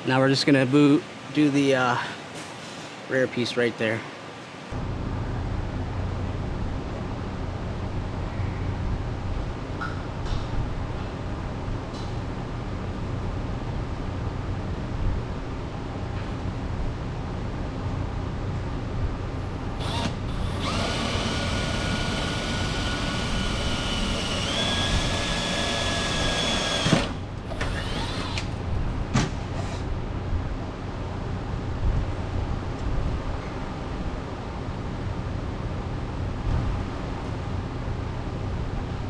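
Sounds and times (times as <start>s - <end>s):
steady background hiss: 0.0s - 20.0s
cordless drill whining: 19.8s - 28.5s.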